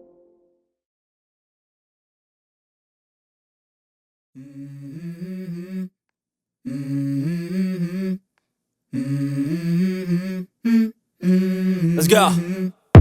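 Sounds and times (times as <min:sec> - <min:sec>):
person humming a melody: 0:04.4 - 0:05.9, 0:06.7 - 0:08.2, 0:09.0 - 0:13.0.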